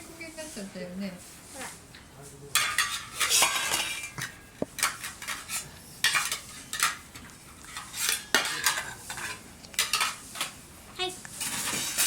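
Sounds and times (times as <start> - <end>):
metal utensils scraping cookware: 2.5 - 10.6, 11.4 - 12.0.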